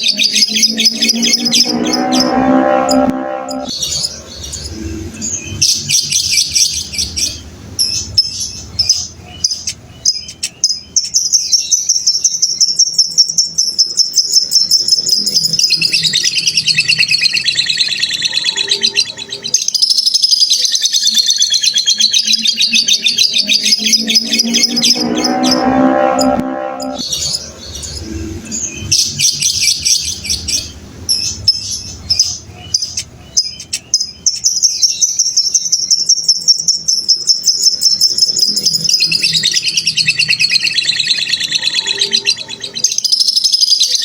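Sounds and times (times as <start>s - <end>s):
lower-pitched bird call: 0.0s - 10.3s, 15.2s - 32.9s
bird chirps: 0.0s - 44.0s.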